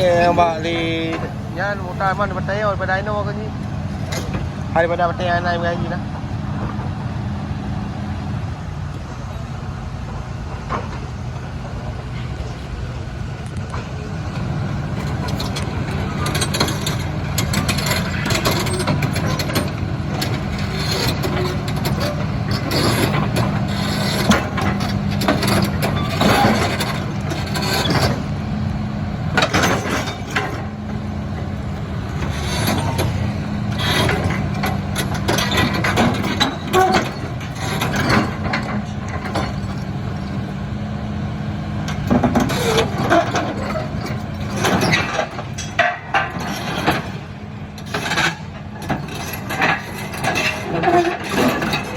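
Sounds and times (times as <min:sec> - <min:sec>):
excavator diesel engine running: 0:00.0 - 0:51.9
metallic clanks and knocks: 0:15.0 - 0:28.4, 0:29.3 - 0:31.0, 0:32.0 - 0:40.5, 0:41.8 - 0:51.9.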